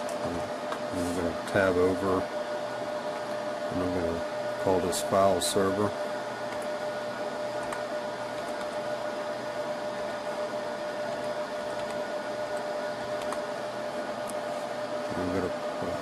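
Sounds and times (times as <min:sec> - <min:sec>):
server cooling fans whining: 0:00.0 - 0:16.0
faint keyboard clicks: 0:11.8 - 0:13.4.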